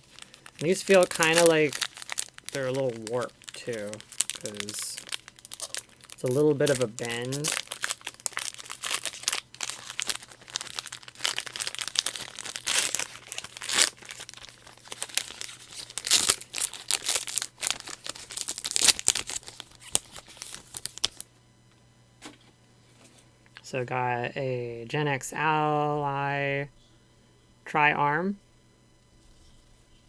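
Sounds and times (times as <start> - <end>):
wrapper crinkling and tearing: 0.0 - 21.3.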